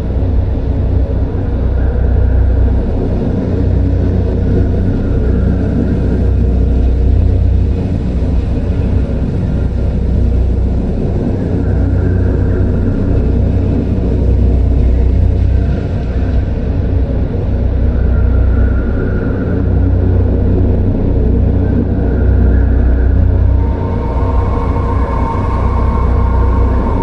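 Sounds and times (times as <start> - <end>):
deep rumbling drone: 0.0 - 27.0
faint higher tone: 22.1 - 27.0.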